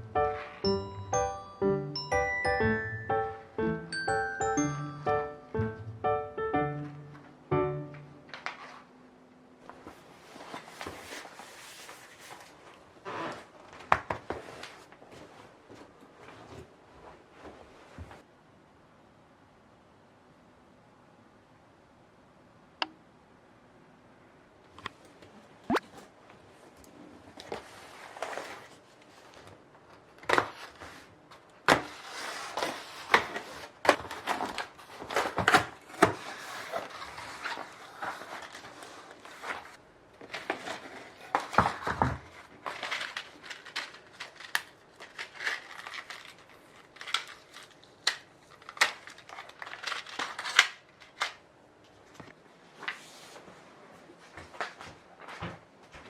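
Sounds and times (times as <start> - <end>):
plastic wrap crinkling: 31.8 - 51.4.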